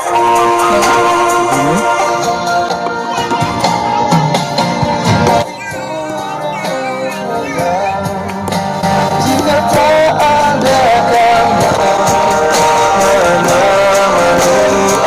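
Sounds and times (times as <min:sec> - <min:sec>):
pop song through speaker: 0:00.0 - 0:15.0.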